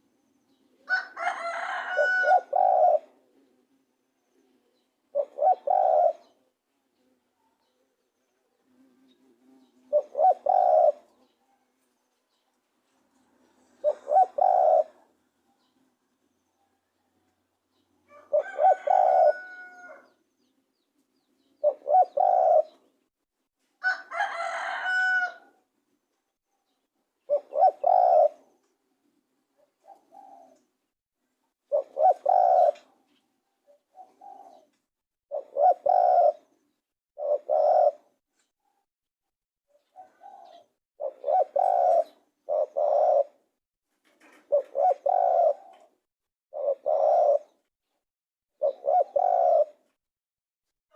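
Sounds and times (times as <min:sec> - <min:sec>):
dove cooing: 0:00.8 - 0:07.2, 0:08.5 - 0:11.4, 0:13.2 - 0:15.7, 0:18.1 - 0:20.2, 0:21.6 - 0:22.9, 0:27.3 - 0:28.6, 0:29.6 - 0:30.7, 0:31.6 - 0:33.0, 0:33.6 - 0:36.6, 0:37.2 - 0:38.2, 0:39.7 - 0:43.5, 0:44.2 - 0:47.6, 0:48.6 - 0:49.9
rooster crowing: 0:00.9 - 0:02.7, 0:18.1 - 0:20.2, 0:23.8 - 0:25.6.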